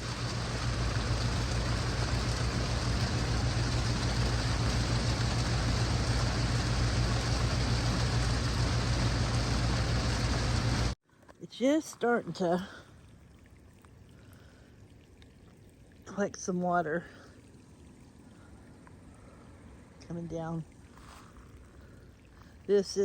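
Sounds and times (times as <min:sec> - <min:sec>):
heavy rain hissing: 0:00.0 - 0:11.0.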